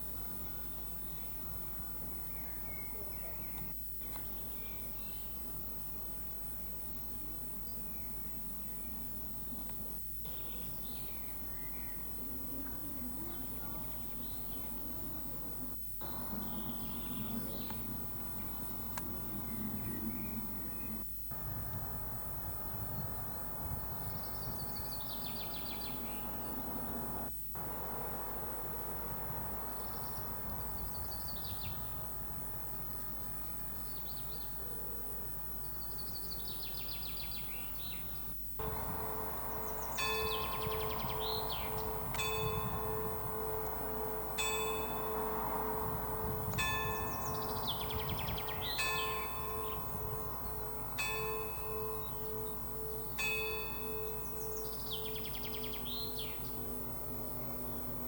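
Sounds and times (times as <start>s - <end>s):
birds singing: 0.0s - 5.6s, 10.2s - 15.0s, 16.0s - 58.0s
church bell tolling: 38.6s - 58.0s.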